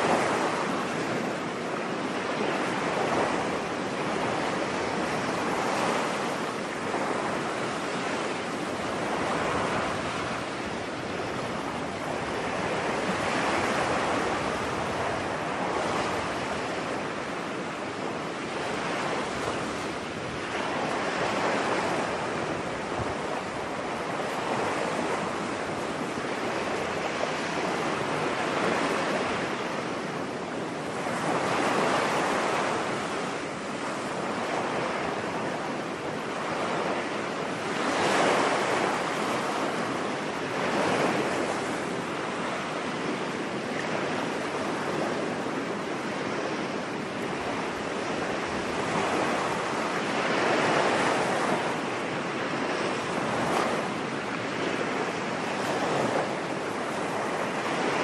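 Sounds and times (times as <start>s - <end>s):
ocean waves breaking on beach: 0.0s - 58.0s.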